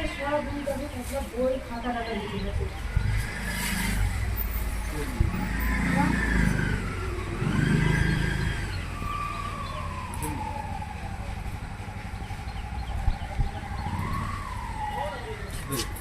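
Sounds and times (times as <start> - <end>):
road traffic rumbling: 0.0 - 16.0
siren wailing: 1.8 - 16.0.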